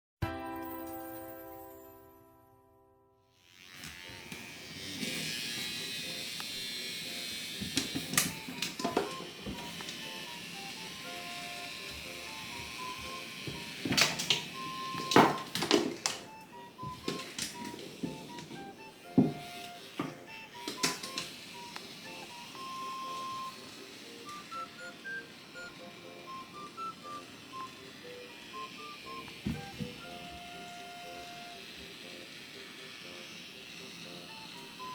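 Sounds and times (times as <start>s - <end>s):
toy motor buzzing: 3.4s - 34.9s
beep-like melody: 8.3s - 31.6s
sharp clicks and taps: 11.9s - 23.4s
sharp clicks: 19.6s - 23.6s.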